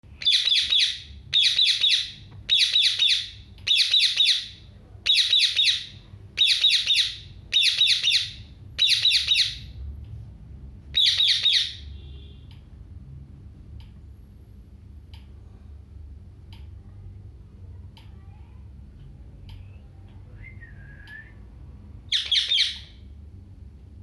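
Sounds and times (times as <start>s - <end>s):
parrot squawking: 0.2s - 9.7s, 10.9s - 11.9s, 22.1s - 23.0s.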